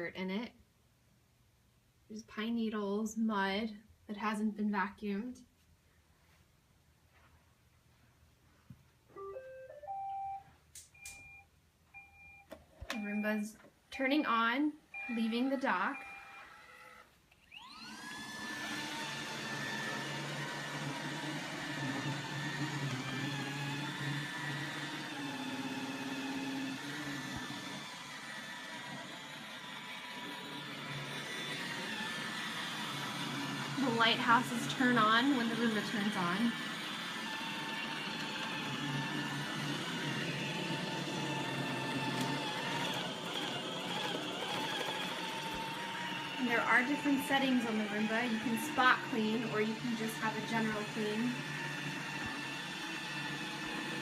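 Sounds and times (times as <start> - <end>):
robot vacuum whining: 14.9 - 54.0.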